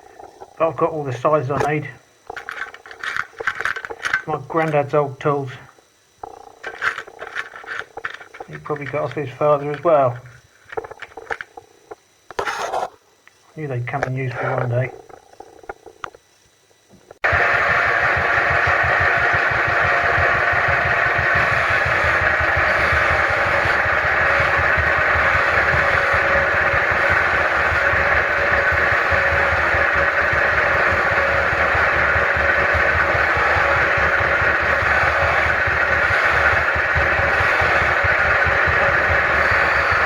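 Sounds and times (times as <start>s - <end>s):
machine whirring: 0.0s - 5.6s, 6.2s - 11.6s, 17.2s - 40.0s
machine low pulsing: 17.2s - 40.0s.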